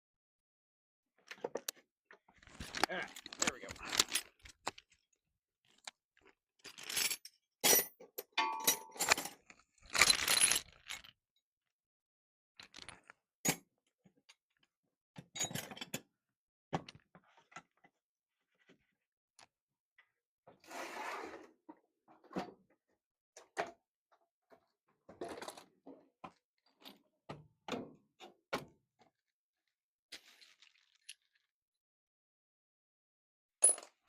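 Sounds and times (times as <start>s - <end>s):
metal tools clattering into toolbox: 6.7s - 10.9s.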